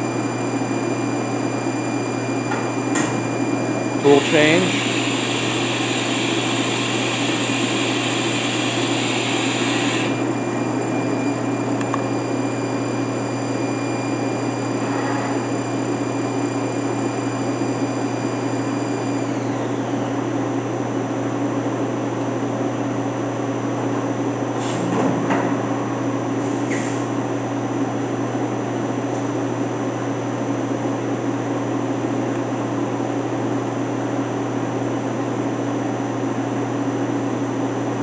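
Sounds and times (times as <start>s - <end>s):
high whine falling in pitch: 0.0s - 20.4s
machine hum: 0.0s - 20.9s.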